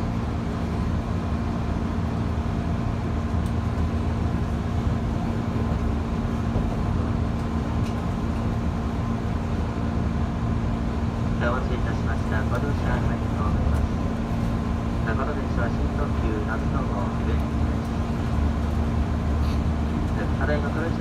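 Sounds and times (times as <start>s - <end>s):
train cabin rumble: 0.0s - 21.0s.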